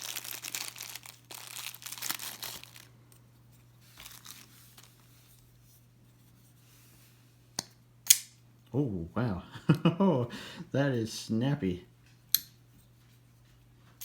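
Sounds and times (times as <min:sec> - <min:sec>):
plastic packaging crinkling: 0:00.0 - 0:03.0, 0:03.9 - 0:05.1
sharp click: 0:07.6 - 0:08.3.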